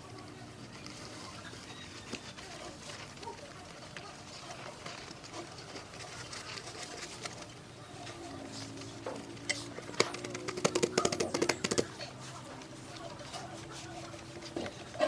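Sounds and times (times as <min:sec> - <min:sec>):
light scraping and rubbing: 0:00.0 - 0:15.0
sharp clicks and taps: 0:09.4 - 0:12.0.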